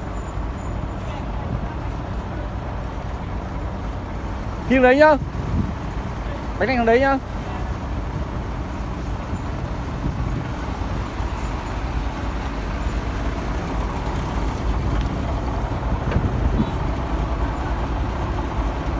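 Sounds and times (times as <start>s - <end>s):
construction machinery rumble: 0.0s - 18.9s.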